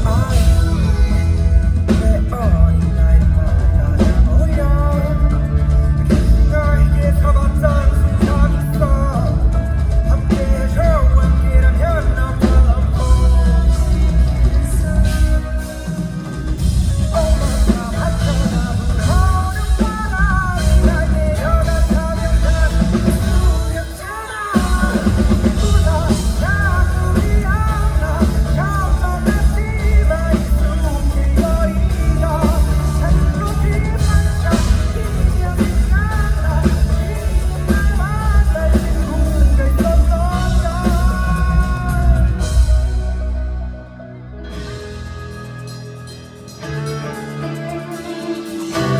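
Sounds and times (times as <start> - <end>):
man singing: 0.0 - 46.0
rock band playing: 0.0 - 48.9.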